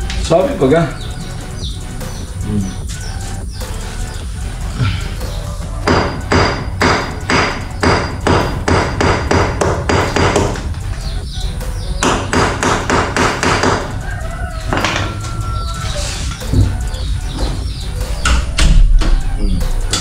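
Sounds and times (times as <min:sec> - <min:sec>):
hammer striking: 0:05.8 - 0:10.7, 0:12.0 - 0:13.9.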